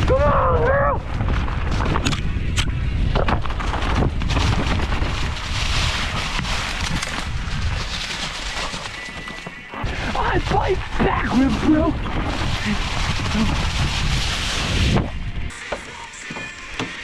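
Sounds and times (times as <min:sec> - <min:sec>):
wind buffeting microphone: 0:00.0 - 0:08.2, 0:09.8 - 0:15.5
bike rolling on dirt trail: 0:00.1 - 0:15.5
bike knocks and rattles: 0:01.1 - 0:07.8.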